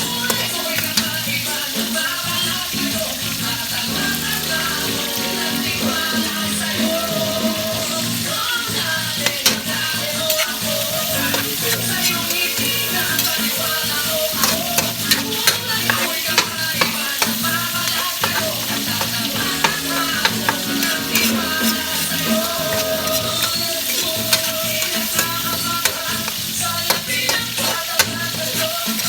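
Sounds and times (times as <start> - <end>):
food sizzling in a frying pan: 0.0 - 29.0
music: 0.0 - 29.0
utensil scraping a pan: 3.7 - 29.0.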